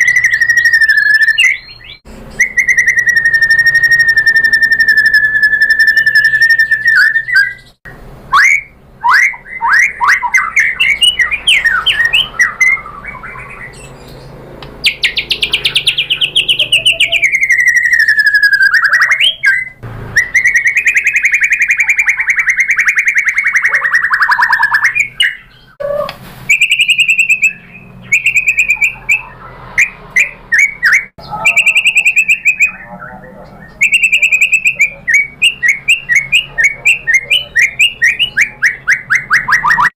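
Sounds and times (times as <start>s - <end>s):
songbird singing varied song: 0.0s - 39.9s.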